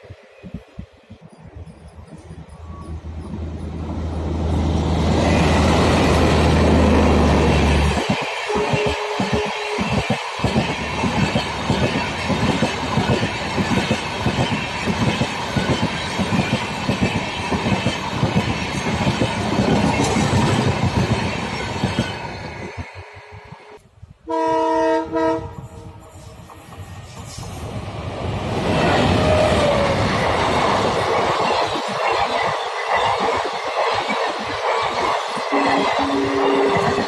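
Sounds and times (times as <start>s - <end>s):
train passing with clickety-clack: 0.0s - 37.0s
locomotive horn blasts: 8.5s - 9.8s, 24.3s - 25.9s, 35.5s - 37.0s.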